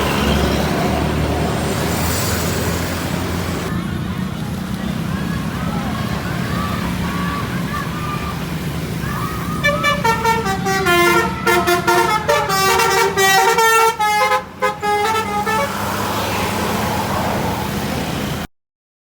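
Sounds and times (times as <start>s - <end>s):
bus engine running: 0.0s - 18.5s
multi-tone bus horns jingle: 9.6s - 16.0s.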